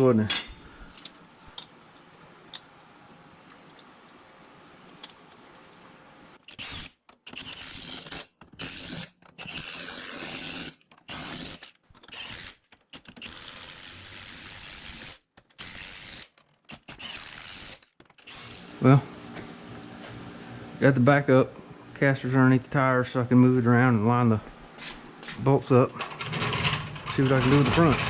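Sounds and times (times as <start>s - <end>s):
ratcheting metal mechanism: 26.0s - 28.0s.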